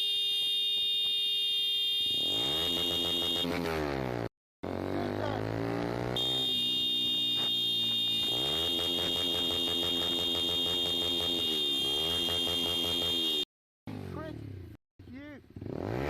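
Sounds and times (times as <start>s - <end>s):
motorcycle engine: 1.9s - 16.0s
high-pitched electronic buzzer tone: 2.0s - 3.6s, 6.1s - 13.5s.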